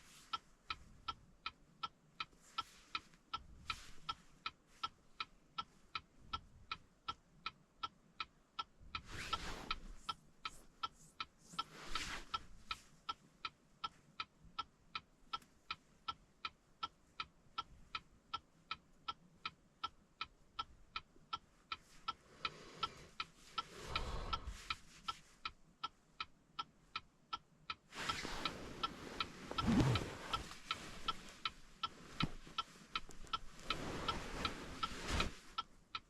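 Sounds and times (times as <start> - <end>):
rustling handling noises: 27.9 - 35.7.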